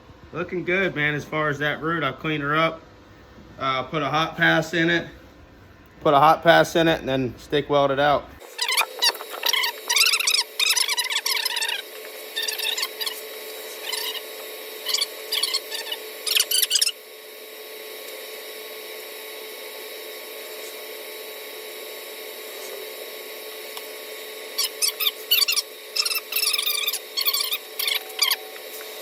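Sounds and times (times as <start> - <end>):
squeaky scrubbing on steel: 8.4 - 17.0, 24.6 - 28.8.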